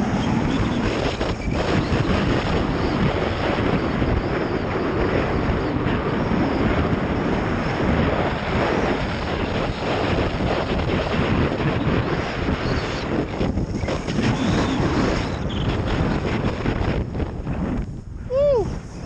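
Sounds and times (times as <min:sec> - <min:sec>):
wind buffeting microphone: 0:00.0 - 0:19.0
snowboard sliding over snow: 0:06.2 - 0:19.0.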